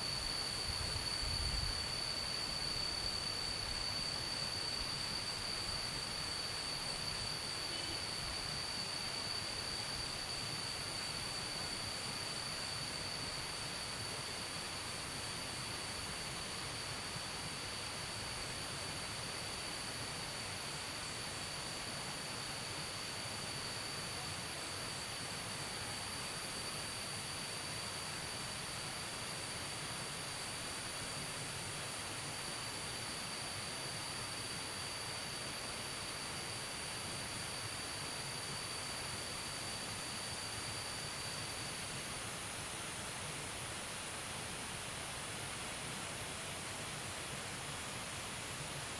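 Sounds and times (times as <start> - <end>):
pulsing insect buzz: 0.0 - 14.2
insect trilling: 0.0 - 30.6
soft hiss: 0.0 - 48.9.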